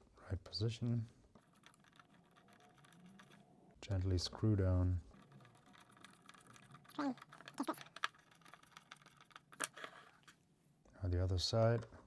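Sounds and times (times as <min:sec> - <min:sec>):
plastic parts and screws clicking: 0:01.3 - 0:10.4.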